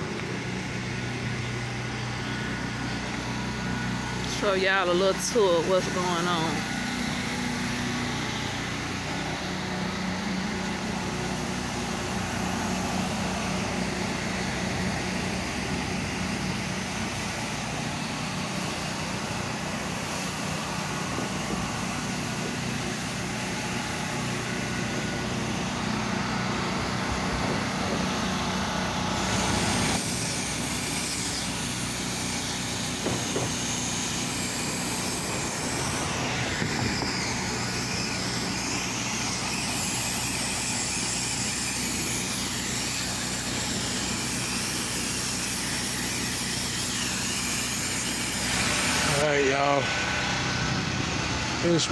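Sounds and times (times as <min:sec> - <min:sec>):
pressure washer engine running: 0:00.0 - 0:51.9
hiss of spray: 0:29.2 - 0:49.2.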